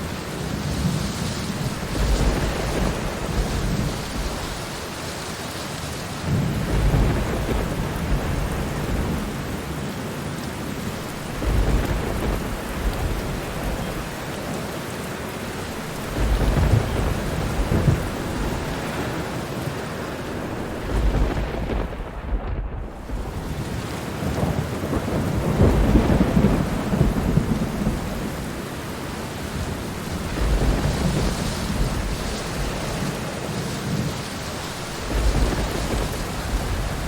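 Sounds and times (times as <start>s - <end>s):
distant thunder rolling: 0.0s - 5.0s, 6.2s - 37.0s
steady rain hiss: 0.0s - 37.0s.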